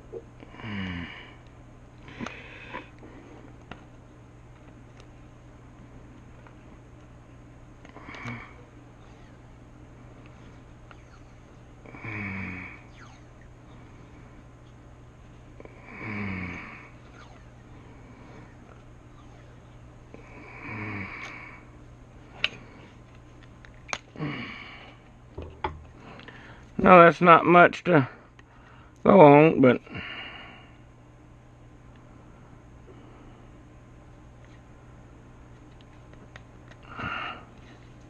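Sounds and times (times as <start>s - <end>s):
low hum: 0.0s - 29.0s.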